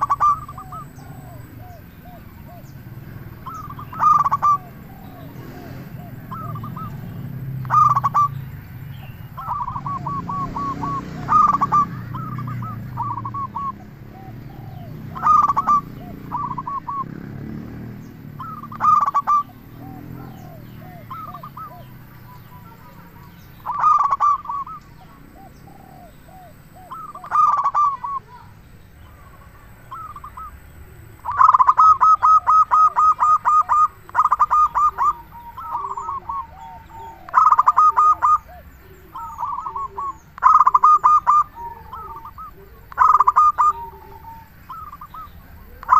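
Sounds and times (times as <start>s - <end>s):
faint low dove cooing: 0.0s - 8.5s, 9.2s - 45.9s
doves stuttering cooing: 0.0s - 45.9s.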